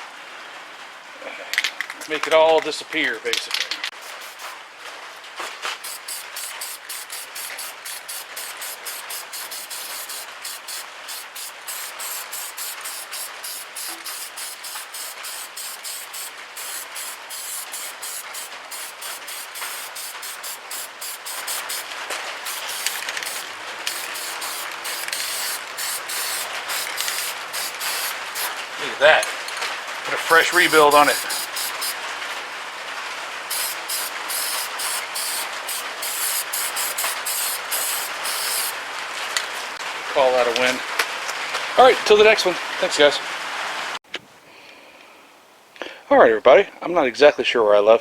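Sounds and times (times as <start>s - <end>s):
aerosol paint can spraying: 3.9s - 4.6s, 5.8s - 28.6s, 30.1s - 32.0s, 33.5s - 38.8s.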